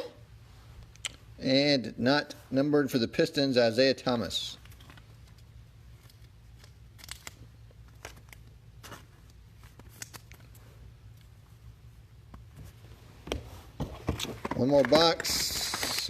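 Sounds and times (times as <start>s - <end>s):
low steady hum: 0.0s - 16.0s
trading cards rustling and clicking: 4.6s - 11.4s, 12.3s - 16.0s.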